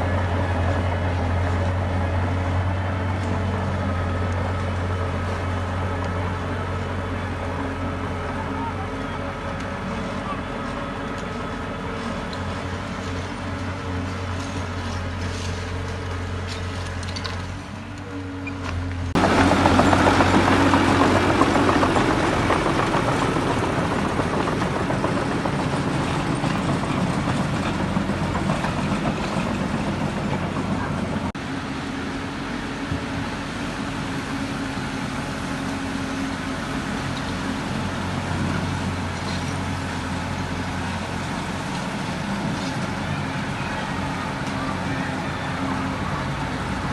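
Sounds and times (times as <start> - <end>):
diesel machinery engine hum: 0.0 - 46.9
loud rushing grinding noise: 19.0 - 46.9.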